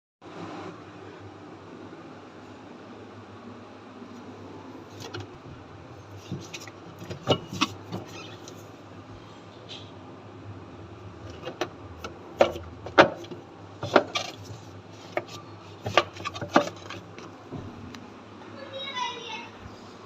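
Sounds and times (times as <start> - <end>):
sharp clicks and knocks: 11.3 - 17.7.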